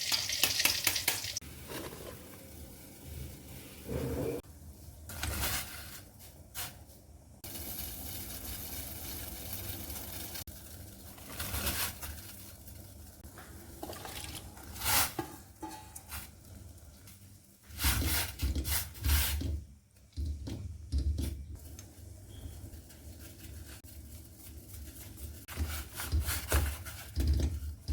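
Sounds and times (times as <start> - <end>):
scraping and rubbing: 7.4 - 13.3, 14.6 - 16.6, 22.4 - 27.9
dishes and containers clattering: 13.8 - 16.3.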